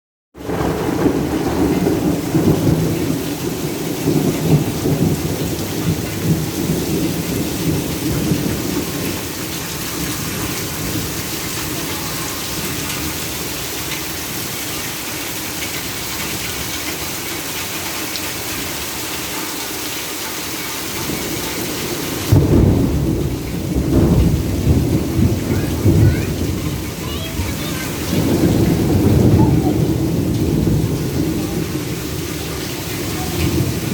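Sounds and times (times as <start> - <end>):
thunder rumbling: 0.4 - 15.1, 20.9 - 33.9
steady rain falling: 0.4 - 33.9.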